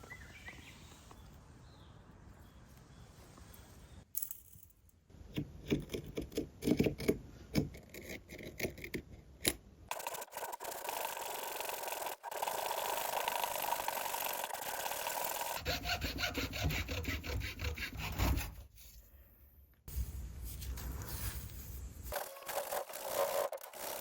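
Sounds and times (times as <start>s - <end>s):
sanding cardboard rasp: 10.0s - 18.8s, 22.1s - 24.0s.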